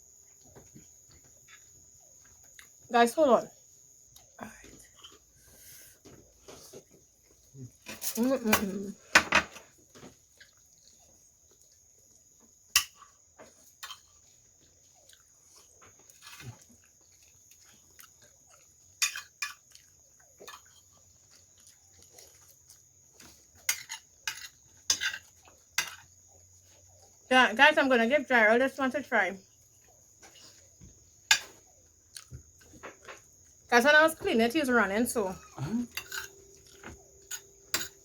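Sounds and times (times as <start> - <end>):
chewing smacks: 10.2 - 12.3, 14.6 - 23.6
cutlery clinking on dishes: 13.8 - 14.2, 19.0 - 19.7, 23.7 - 26.1, 31.3 - 31.6, 35.9 - 38.0.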